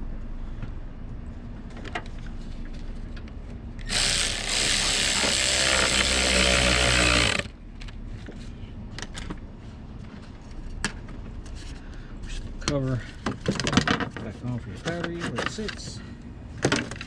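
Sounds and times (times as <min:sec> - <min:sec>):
power tool running: 0:03.9 - 0:07.5.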